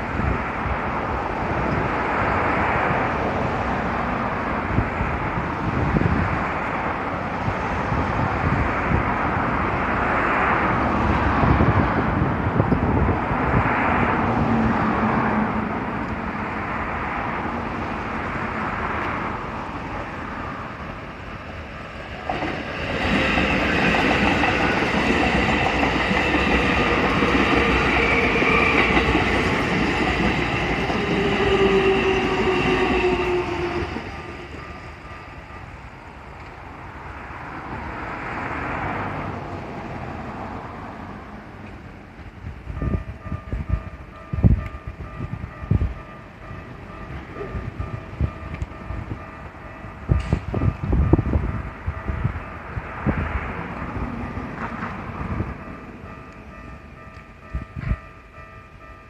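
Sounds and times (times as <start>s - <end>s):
train wheels clattering over rails: 22.2s - 34.7s.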